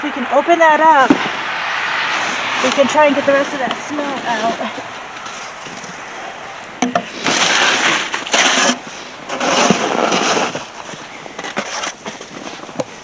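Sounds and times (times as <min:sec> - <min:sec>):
snow shovel scraping snow: 0:02.1 - 0:05.5, 0:07.1 - 0:12.8.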